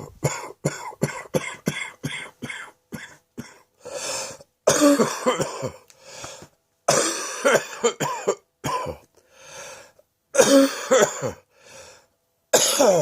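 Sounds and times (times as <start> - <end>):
man chesty coughing: 0.0 - 3.7, 4.7 - 5.8, 6.9 - 9.1, 10.4 - 11.5, 12.6 - 13.0.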